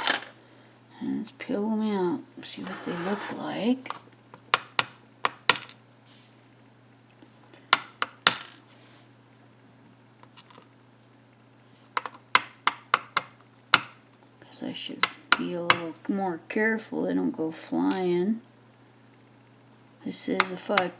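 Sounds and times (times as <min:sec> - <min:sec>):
lock pins clicking on hard surface: 0:00.0 - 0:00.3.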